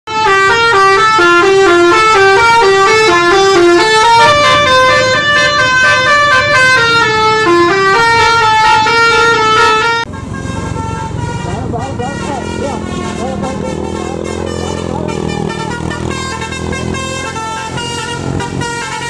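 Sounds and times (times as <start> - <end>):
multi-tone bus horn melody: 0.1 - 19.0.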